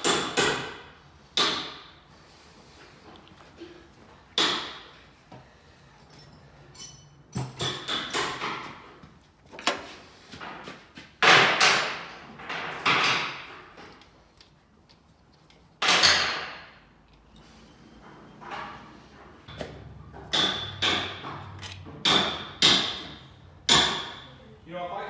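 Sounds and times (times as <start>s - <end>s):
metal tools clanking: 6.0s - 8.4s, 17.0s - 24.4s.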